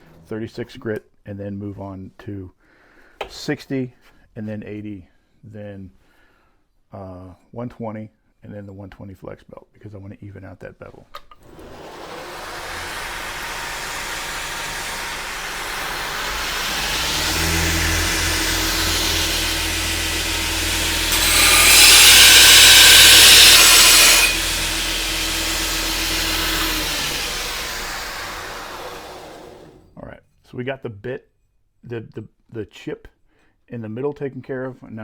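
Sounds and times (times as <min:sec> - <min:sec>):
belt grinder grinding metal: 0:11.4 - 0:29.9.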